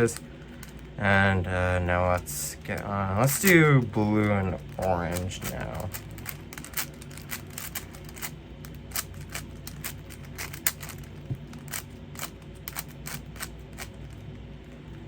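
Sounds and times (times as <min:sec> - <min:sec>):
puzzle cube plastic clicking: 0:04.2 - 0:14.2.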